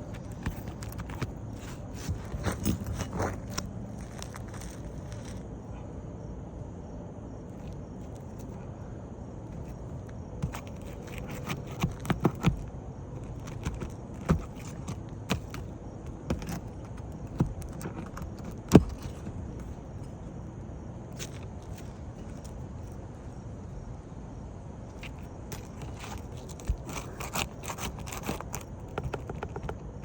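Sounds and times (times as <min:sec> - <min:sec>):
low background noise: 0:00.0 - 0:30.0
hand tools tapping on shingles: 0:00.1 - 0:03.6, 0:10.4 - 0:12.6, 0:13.2 - 0:19.3, 0:25.5 - 0:30.0.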